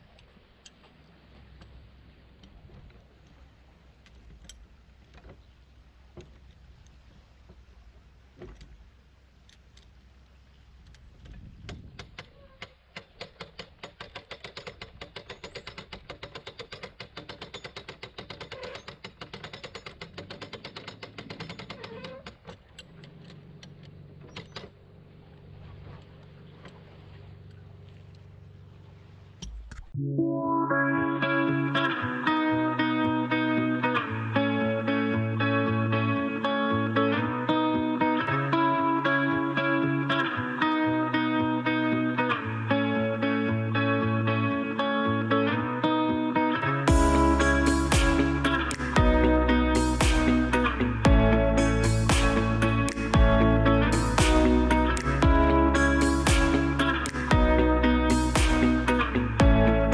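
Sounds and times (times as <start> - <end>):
ratchet windlass clicking: 10.8 - 24.8
guitar music: 30.0 - 59.9
low hum: 46.9 - 59.9.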